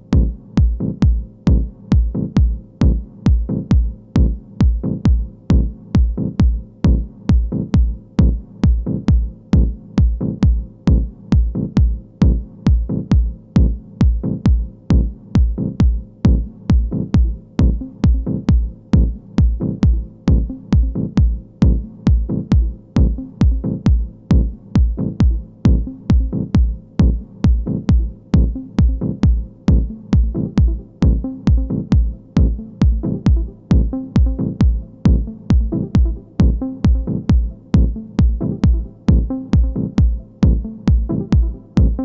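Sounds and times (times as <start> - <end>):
electronic trance music: 14.5 - 42.0.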